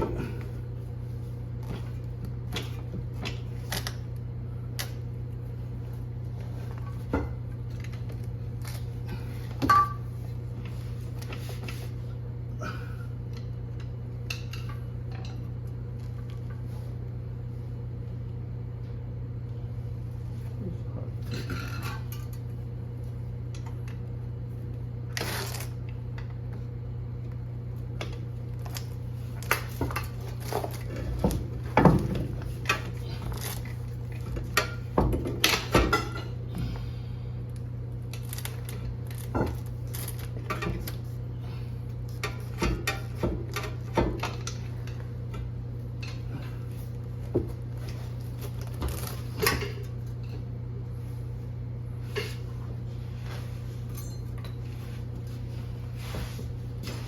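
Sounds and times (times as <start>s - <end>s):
steady low hum: 0.0s - 57.0s
metal tools clanking: 53.9s - 54.7s.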